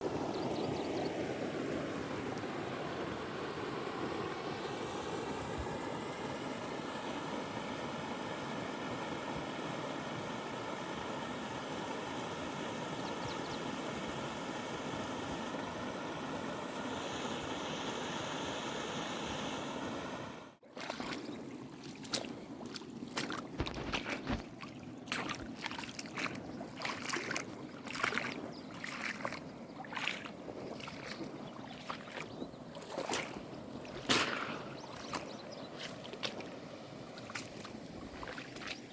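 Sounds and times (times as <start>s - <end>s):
water splashing and gurgling: 20.6s - 38.9s
river water rushing: 20.8s - 38.7s.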